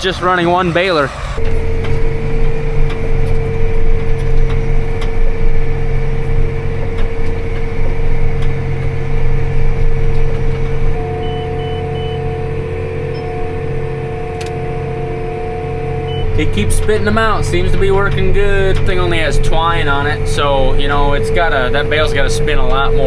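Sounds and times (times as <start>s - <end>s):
engine whine: 0.0s - 23.0s
steady tone: 0.0s - 23.0s
tractor engine running: 0.0s - 23.0s
short electronic beeps: 10.9s - 18.2s.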